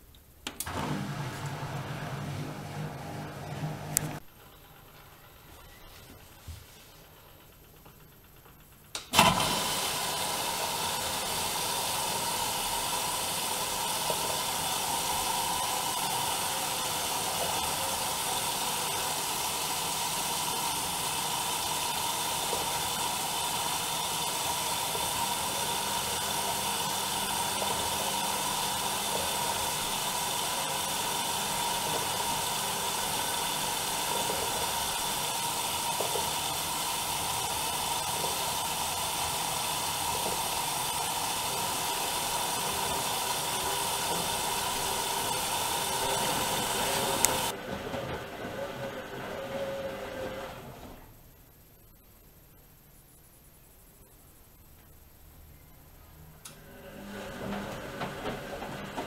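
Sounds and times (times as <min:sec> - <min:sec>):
water filling hiss: 0:09.1 - 0:47.6.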